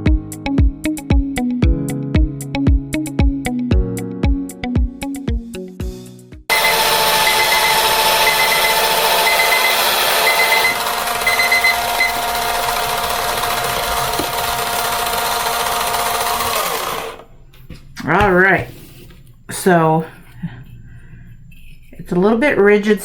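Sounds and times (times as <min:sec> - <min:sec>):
digital kitchen timer beeping: 0:06.5 - 0:13.9
electric sanding machine running: 0:06.5 - 0:17.3.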